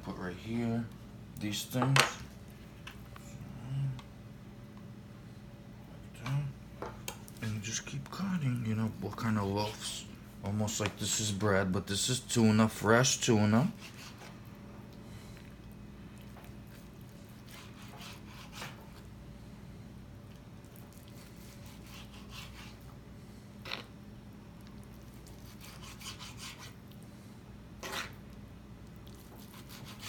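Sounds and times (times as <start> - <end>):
low steady hum: 0.0 - 30.0
knife sawing through fish: 13.7 - 14.3, 17.4 - 18.8, 21.2 - 22.8, 25.4 - 26.8, 29.4 - 30.0.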